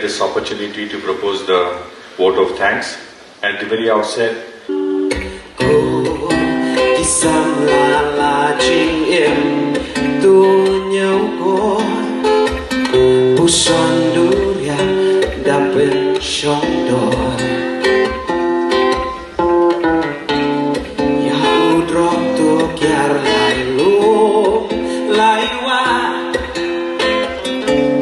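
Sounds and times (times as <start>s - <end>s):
strummed acoustic guitar: 4.7s - 28.0s
person singing: 5.1s - 18.3s, 21.0s - 28.0s.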